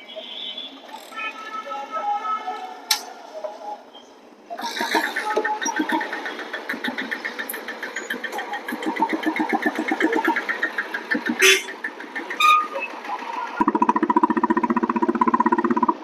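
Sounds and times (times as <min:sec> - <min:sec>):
motorcycle engine running: 0:05.2 - 0:16.0.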